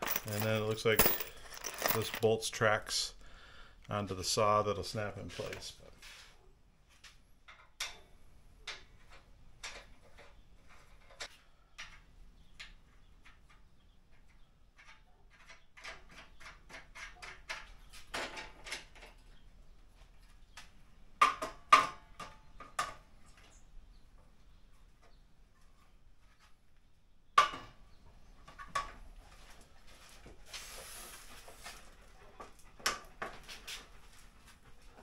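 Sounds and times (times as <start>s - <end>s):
clicks and knocks of parts: 0.0s - 2.3s.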